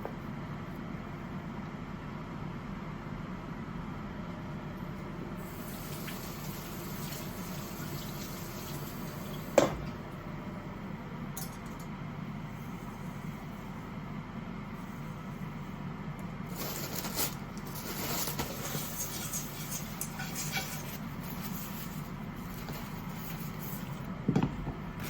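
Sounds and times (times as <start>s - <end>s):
liquid running with a hiss: 5.4s - 9.6s
steady low hum: 8.3s - 25.0s.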